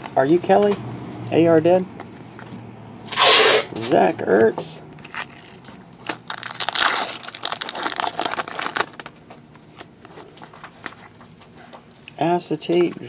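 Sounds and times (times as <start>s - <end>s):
wrapper crinkling and tearing: 5.0s - 11.3s.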